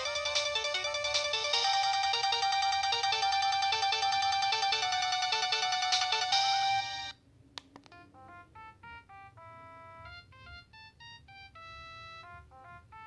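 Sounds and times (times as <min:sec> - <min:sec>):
phone ringtone: 0:00.0 - 0:07.2
ringtone melody of held notes: 0:00.0 - 0:07.2.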